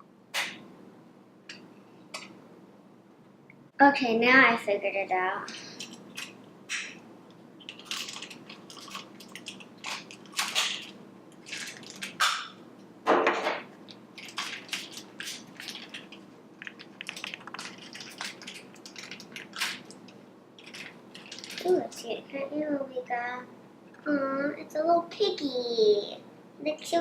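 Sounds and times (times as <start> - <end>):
packaging clicks and rustles: 7.7 - 12.4, 13.9 - 21.9.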